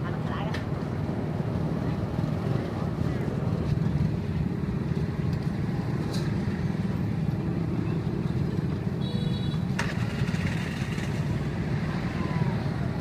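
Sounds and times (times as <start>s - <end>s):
vehicle engines rumbling: 0.0s - 13.0s.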